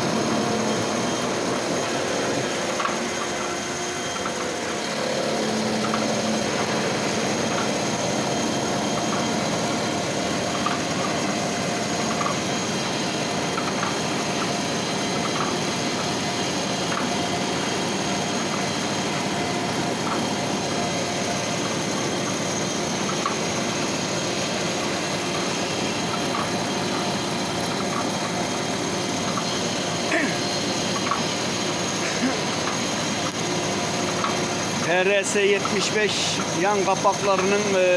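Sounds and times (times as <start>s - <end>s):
milling machine whine: 0.0s - 37.9s.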